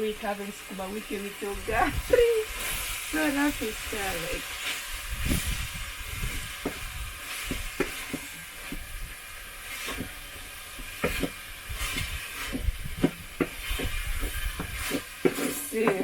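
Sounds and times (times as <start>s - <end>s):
greens sizzling: 0.0s - 16.0s
utensil scraping a saucepan: 10.8s - 16.0s.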